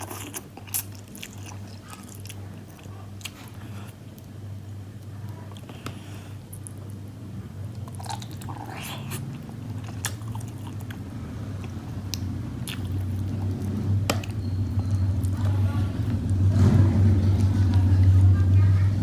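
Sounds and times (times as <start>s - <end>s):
person chewing: 0.0s - 4.3s, 7.8s - 16.5s
steady low hum: 0.0s - 19.0s.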